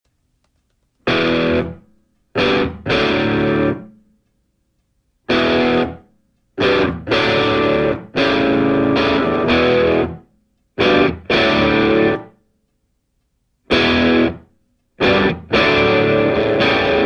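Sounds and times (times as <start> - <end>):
distorted electric guitar stabs: 1.1 - 1.8, 2.4 - 3.9, 5.3 - 6.0, 6.6 - 10.2, 10.8 - 12.3, 13.7 - 14.4, 15.0 - 17.0.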